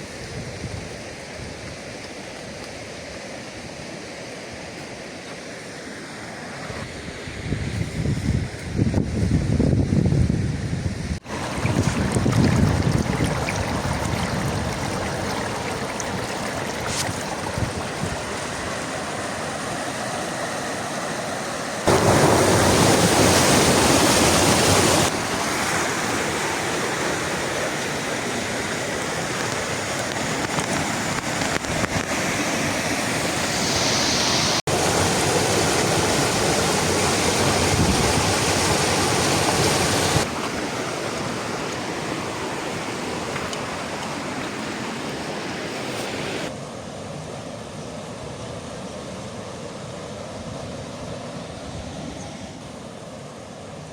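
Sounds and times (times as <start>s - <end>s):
waterfall rushing: 11.2s - 46.6s.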